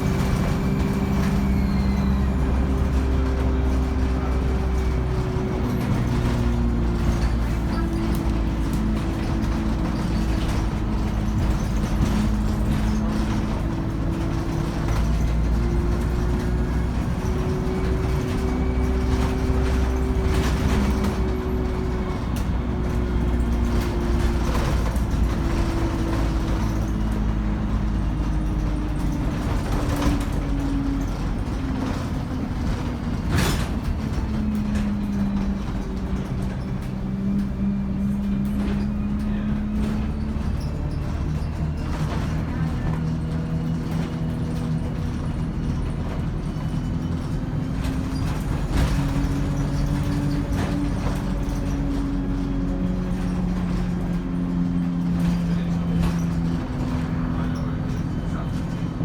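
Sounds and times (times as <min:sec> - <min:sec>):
bus engine rumble: 0:00.0 - 0:59.0
turbo and transmission whine: 0:00.0 - 0:59.0.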